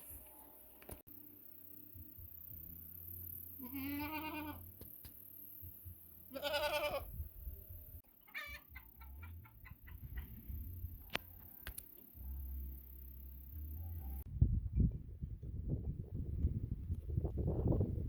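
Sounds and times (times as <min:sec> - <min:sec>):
farm animals calling: 0:03.6 - 0:04.7, 0:06.2 - 0:07.1, 0:08.1 - 0:10.5
sharp clicks: 0:11.0 - 0:12.1.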